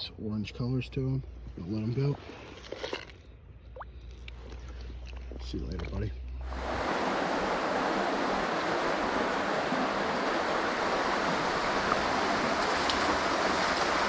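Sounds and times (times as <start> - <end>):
creek water rushing: 6.4 - 14.0.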